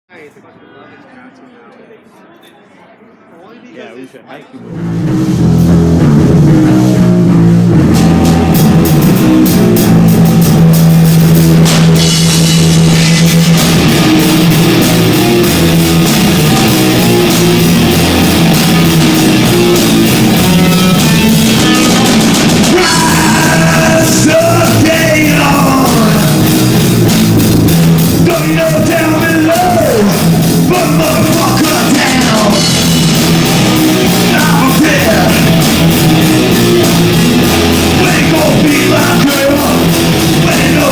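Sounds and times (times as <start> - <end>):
live rock band playing: 4.6 - 40.9
person singing: 14.9 - 26.6, 28.2 - 36.8, 37.5 - 40.9.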